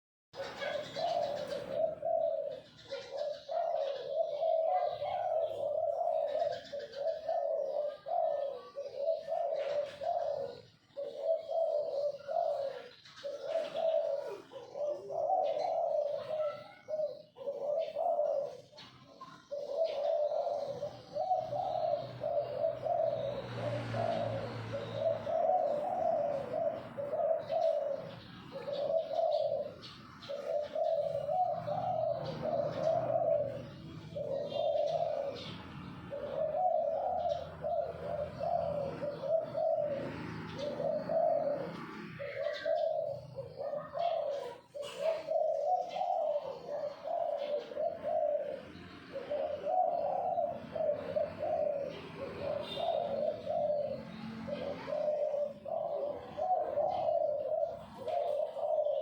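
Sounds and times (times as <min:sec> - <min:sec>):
faint bird chirps: 0:00.4 - 0:35.6, 0:51.9 - 0:59.0
dove cooing: 0:00.4 - 0:59.0.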